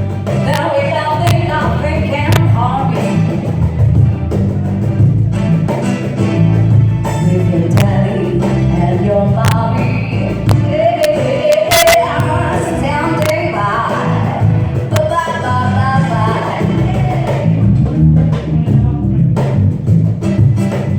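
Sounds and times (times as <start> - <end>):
bass and drums: 0.0 - 20.9.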